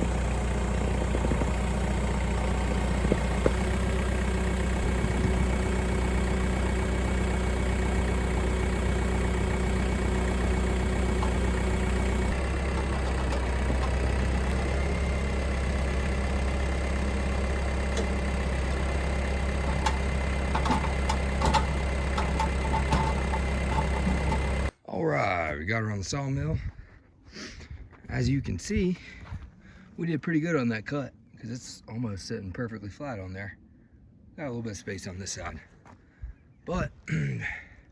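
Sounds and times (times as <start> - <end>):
log knocking and clanking: 0.0 - 6.0, 8.6 - 24.7
tractor engine running: 0.0 - 24.7.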